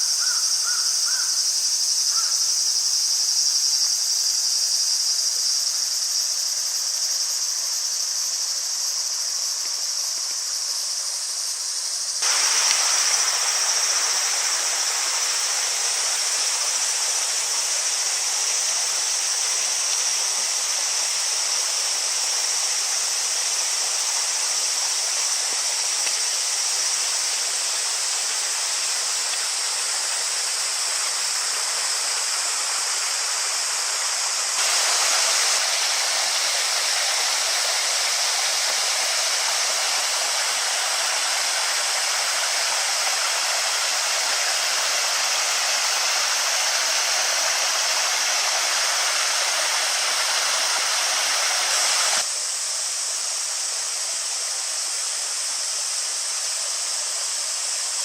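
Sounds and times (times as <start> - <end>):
insects chorus: 0.0 - 58.0
stream flowing: 12.2 - 52.3.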